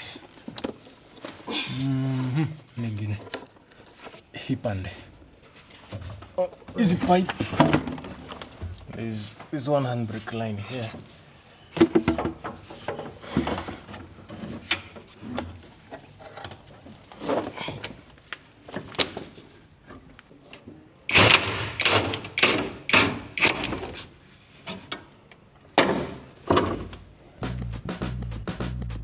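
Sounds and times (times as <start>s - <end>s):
hand tools clattering on metal: 21.1s - 24.0s.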